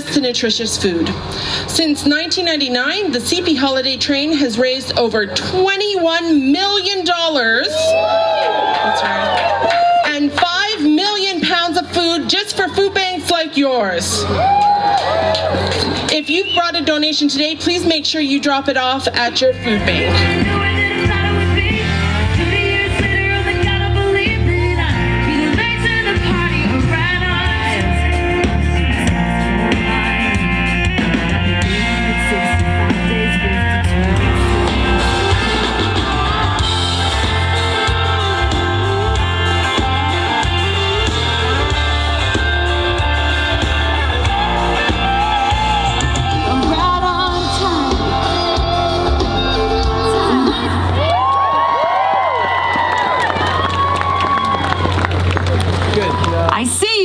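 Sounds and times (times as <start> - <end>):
live rock band playing: 19.5 - 51.1
heavy bass line: 19.5 - 51.4
person singing: 19.6 - 51.1.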